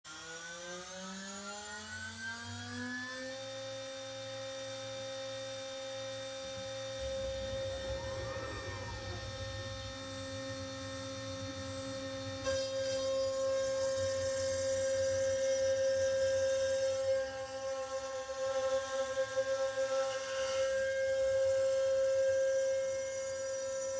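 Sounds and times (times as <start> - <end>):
router spindle whine: 0.1 - 23.9
brief whir: 5.3 - 23.9
low rumble: 6.4 - 15.3.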